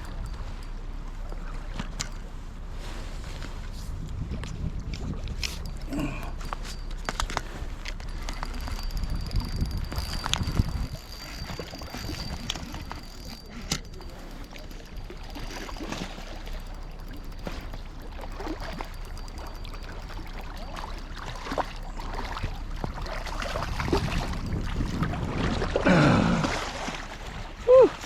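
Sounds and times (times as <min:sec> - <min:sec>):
sharp clicks: 0:05.3 - 0:24.4
river water splashing: 0:05.4 - 0:28.0.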